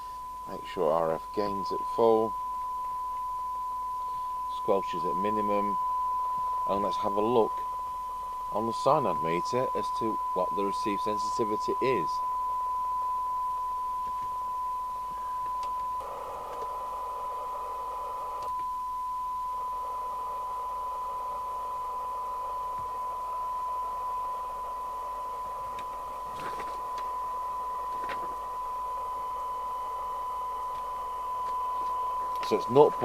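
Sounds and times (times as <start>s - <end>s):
steady test tone: 0.0s - 33.0s
radio receiver hiss: 14.0s - 33.0s.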